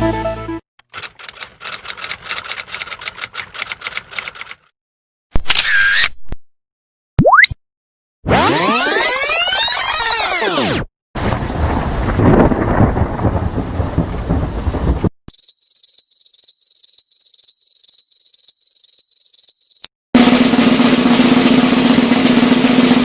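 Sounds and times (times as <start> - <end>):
rumbling noise: 11.2 - 15.1.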